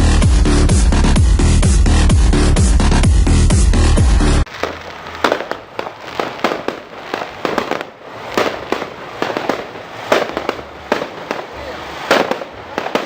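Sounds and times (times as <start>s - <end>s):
fireworks bangs and crackles: 4.4s - 13.0s.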